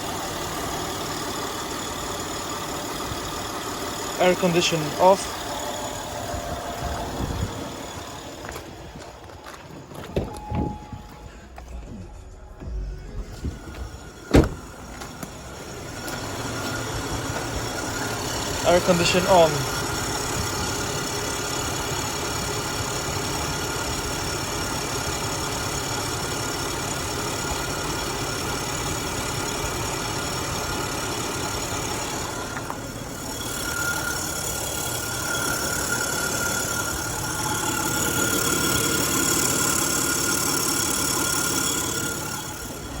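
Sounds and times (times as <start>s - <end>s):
car engine idling: 0.0s - 43.0s
high steady whine: 4.2s - 21.0s, 32.0s - 43.0s.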